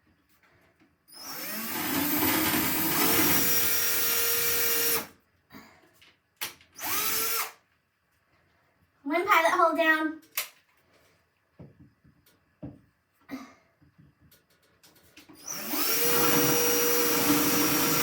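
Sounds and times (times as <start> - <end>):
power drill boring into wall: 1.2 - 5.2, 6.8 - 7.6, 15.4 - 18.0.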